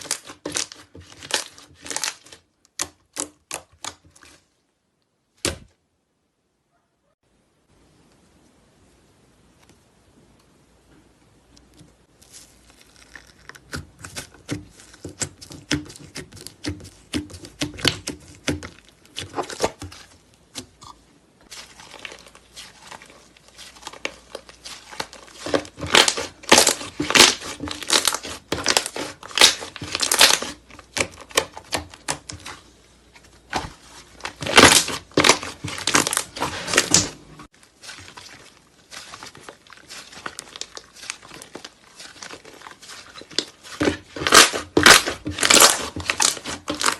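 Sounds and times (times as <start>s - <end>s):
slime crackling and popping: 12.2s - 20.7s, 21.5s - 32.6s, 34.2s - 46.9s.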